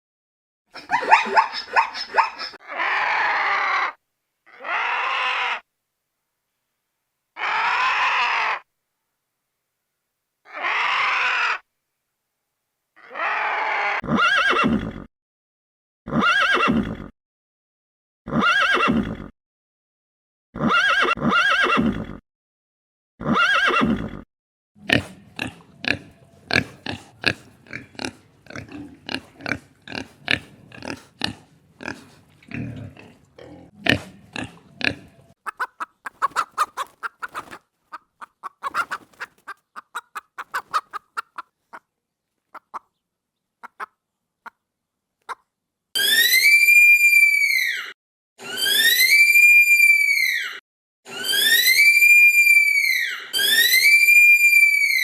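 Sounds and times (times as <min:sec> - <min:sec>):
animal calls: 0:00.7 - 0:05.6, 0:33.8 - 0:41.9
short sharp calls and clicks: 0:35.4 - 0:41.8.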